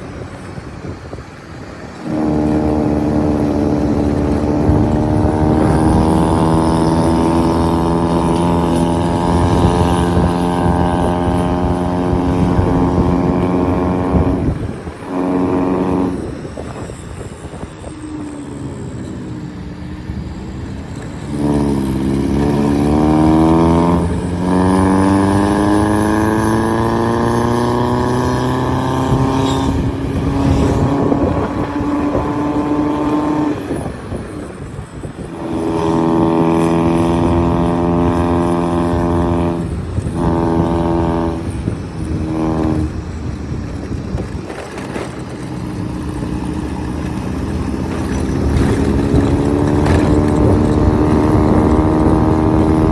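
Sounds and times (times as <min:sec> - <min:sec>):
abrupt steady bursts: 0:00.0 - 0:27.7
diesel engine accelerating: 0:00.0 - 0:52.9.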